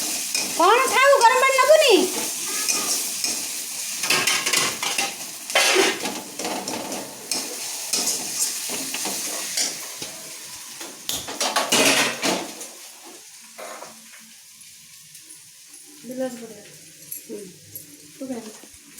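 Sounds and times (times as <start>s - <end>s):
food sizzling in hot oil: 0.0s - 18.9s
metal spatula scraping frying pan: 2.1s - 10.1s.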